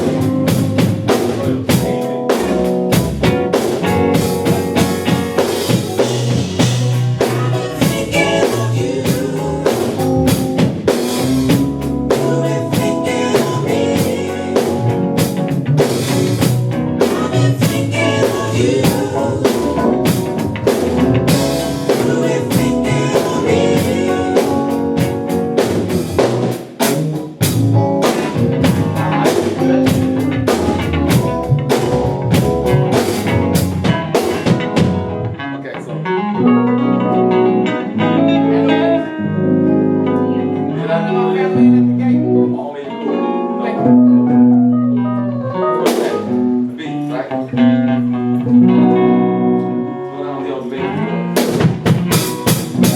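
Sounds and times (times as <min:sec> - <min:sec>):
drum kit: 0:00.0 - 0:35.4, 0:45.6 - 0:46.8, 0:51.3 - 0:52.9
guitar: 0:00.0 - 0:52.9
live band playing: 0:00.0 - 0:52.9.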